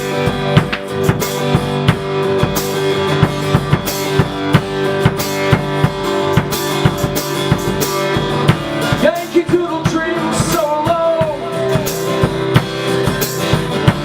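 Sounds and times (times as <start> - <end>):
sustained guitar chords: 0.0 - 13.0
drum kit steady beat: 0.0 - 14.0.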